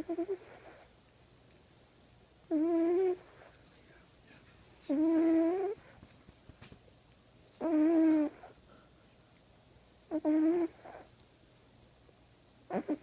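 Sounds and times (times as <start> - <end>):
squeaky whining snores: 0.0 - 0.9, 2.5 - 3.4, 4.9 - 6.0, 7.6 - 8.6, 10.1 - 11.1, 12.7 - 13.0.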